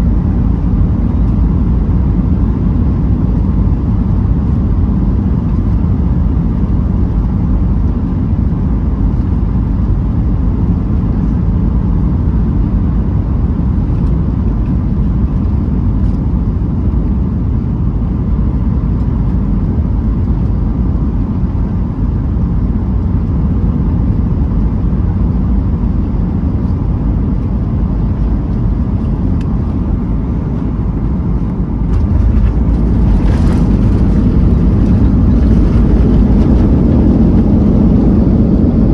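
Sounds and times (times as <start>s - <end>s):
aircraft cabin engine roar: 0.0s - 38.9s.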